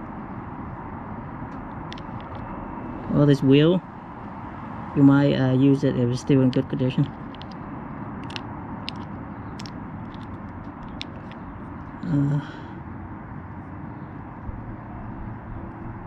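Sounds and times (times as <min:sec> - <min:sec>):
clicks of small plastic parts: 0:01.8 - 0:02.4, 0:06.5 - 0:07.6, 0:08.2 - 0:11.4.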